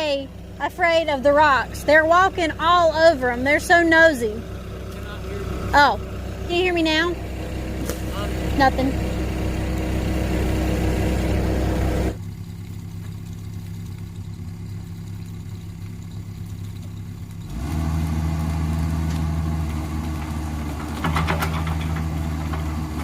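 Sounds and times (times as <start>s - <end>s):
tractor diesel engine running: 0.0s - 23.0s.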